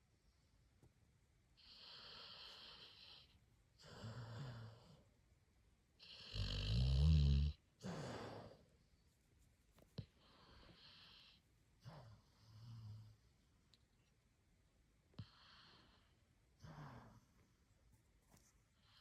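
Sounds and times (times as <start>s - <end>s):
puppy snoring: 1.6s - 5.1s, 6.0s - 8.7s, 10.0s - 13.3s, 15.1s - 17.5s.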